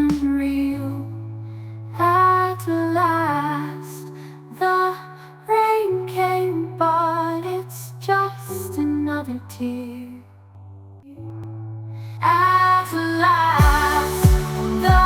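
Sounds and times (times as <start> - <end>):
instrumental ballad melody: 11.2 - 15.0
low bass notes: 13.3 - 15.0.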